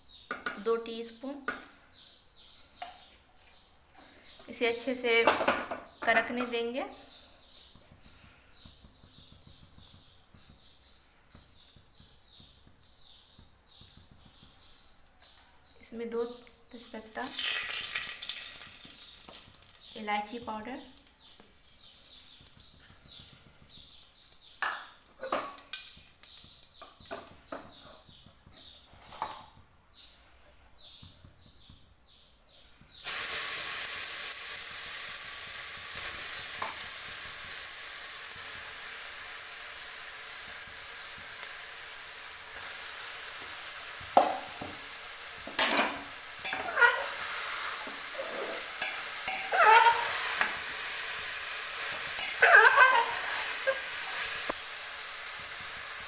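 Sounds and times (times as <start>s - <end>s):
spoon knocking against pot: 0.3s - 0.6s, 48.8s - 50.6s
spices sizzling in hot oil: 16.8s - 28.6s, 33.0s - 56.0s.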